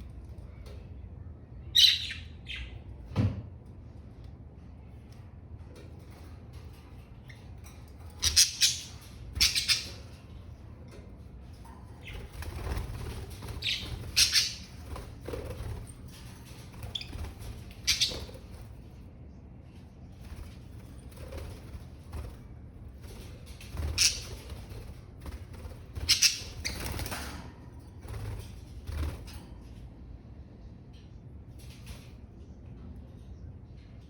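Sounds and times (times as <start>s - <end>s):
budgerigars fluttering wings: 12.0s - 18.7s, 23.0s - 27.4s.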